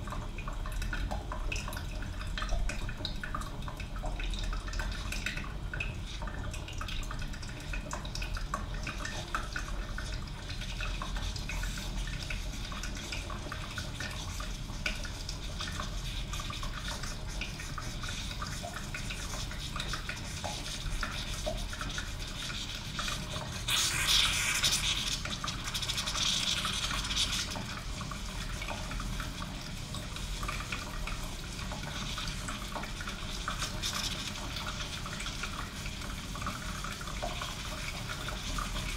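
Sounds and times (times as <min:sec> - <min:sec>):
coffee machine dripping: 0:00.0 - 0:22.2
steamy hissing: 0:23.6 - 0:25.2.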